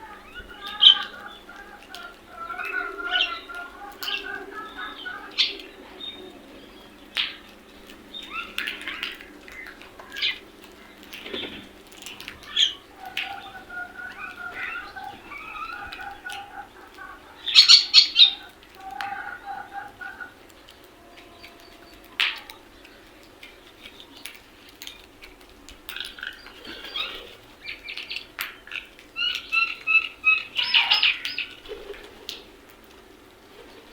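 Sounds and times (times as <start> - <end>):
crows calling: 0.0 - 33.9.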